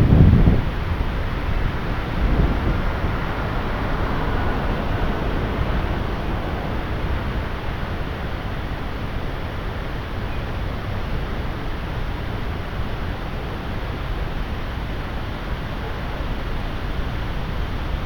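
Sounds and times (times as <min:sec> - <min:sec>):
heavy rain pouring: 0:00.0 - 0:09.9
strong wind: 0:00.0 - 0:18.0.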